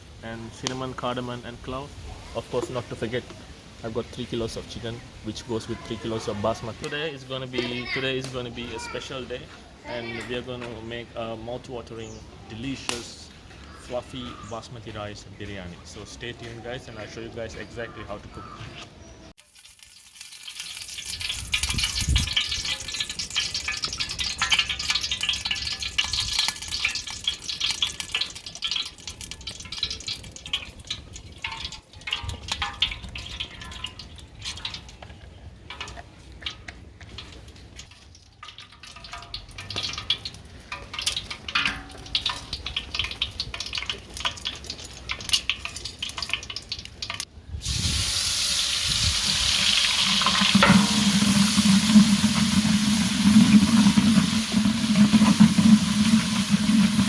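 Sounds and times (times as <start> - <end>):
stirring in a pot: 19.4 - 47.3, 49.5 - 57.0
vegetables sizzling in a pot: 19.4 - 57.0.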